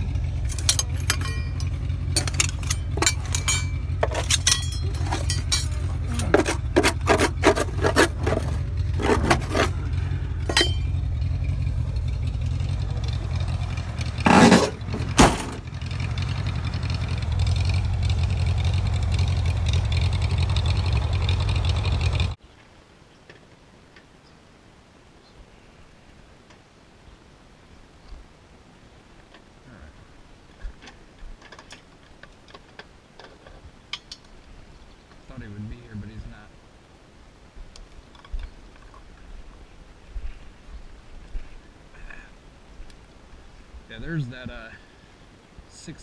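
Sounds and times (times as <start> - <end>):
vehicle engine running: 0.0 - 22.4
loud clatter: 0.5 - 9.9, 10.5 - 10.9, 13.0 - 15.7
clanks rattles and scrapes: 0.5 - 11.0, 11.6 - 16.1.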